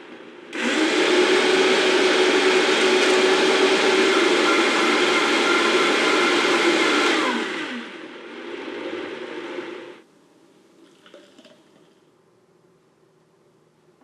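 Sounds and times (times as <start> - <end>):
blender running: 0.5 - 10.0.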